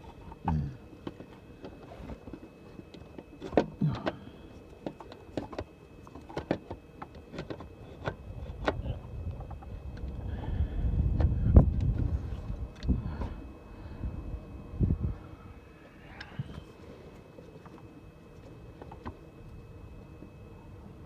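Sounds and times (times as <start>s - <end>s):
low rumble: 8.3s - 15.6s.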